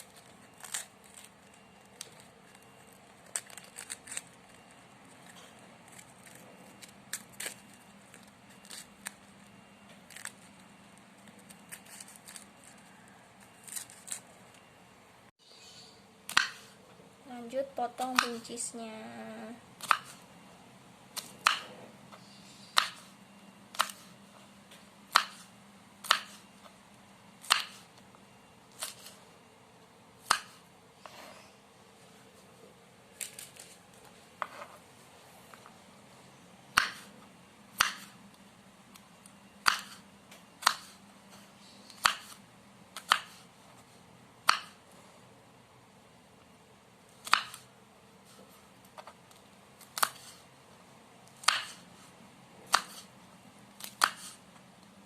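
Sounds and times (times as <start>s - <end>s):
knife chopping on cutting board: 19.8s - 20.2s, 22.8s - 23.1s, 25.1s - 26.4s, 27.4s - 27.8s, 37.8s - 38.1s, 39.6s - 40.0s, 40.6s - 41.0s, 42.0s - 42.4s, 43.0s - 43.4s, 47.2s - 47.6s, 51.4s - 51.8s, 52.7s - 53.1s, 53.8s - 54.4s.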